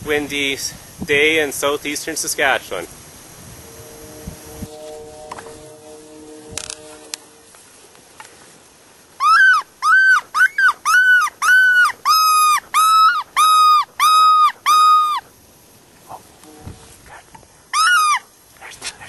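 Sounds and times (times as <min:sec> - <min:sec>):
coyote howler call yelps: 0:09.2 - 0:15.3, 0:17.7 - 0:18.3.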